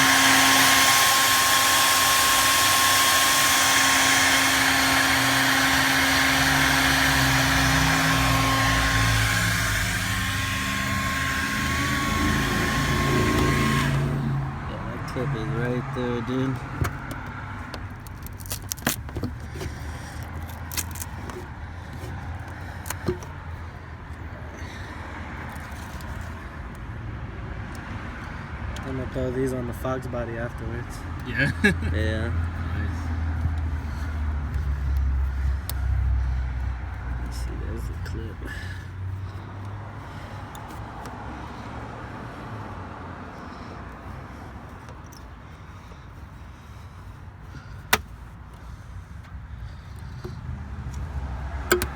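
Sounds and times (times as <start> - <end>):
heat gun blowing: 0.0 - 14.5, 16.6 - 24.9
tools clicking and scraping: 16.6 - 26.8, 43.3 - 45.7, 47.5 - 51.9.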